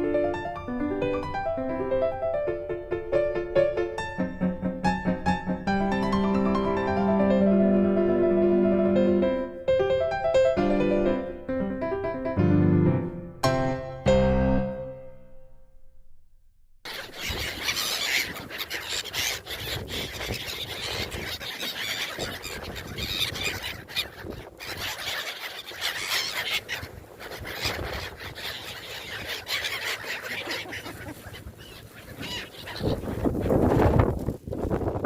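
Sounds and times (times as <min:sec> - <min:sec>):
gulls calling: 0:16.8 - 0:34.1
wind: 0:16.8 - 0:35.0.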